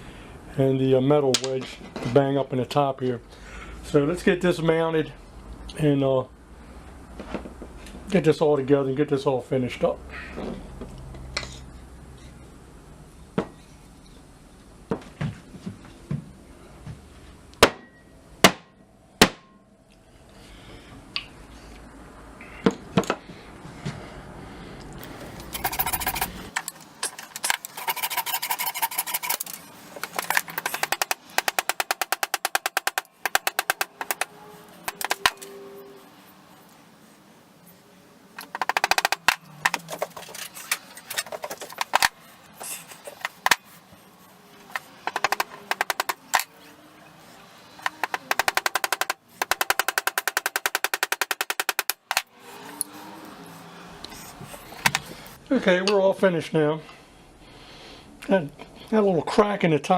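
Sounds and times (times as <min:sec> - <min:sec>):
hammer striking wedges: 0:25.5 - 0:35.5, 0:47.9 - 0:52.3.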